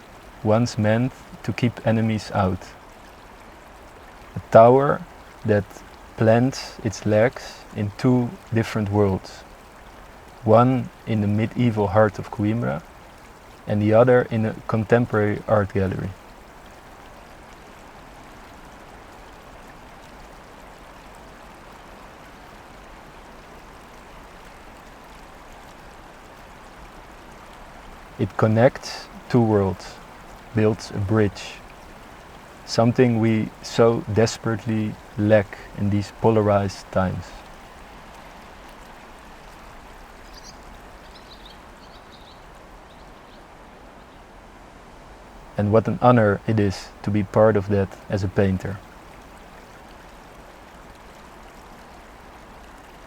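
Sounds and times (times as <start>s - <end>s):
faint dripping ticks: 0.0s - 43.4s, 45.3s - 53.0s
flowing water rushing: 0.0s - 53.0s
outdoor background noise: 0.0s - 53.0s
faint bird chirps: 39.4s - 44.3s.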